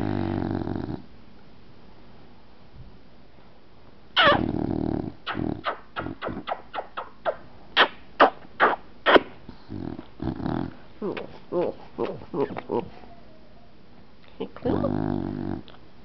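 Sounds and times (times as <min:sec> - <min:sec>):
dog snoring and snorting: 0:00.0 - 0:01.1, 0:04.2 - 0:06.6, 0:08.6 - 0:12.9, 0:14.7 - 0:15.8.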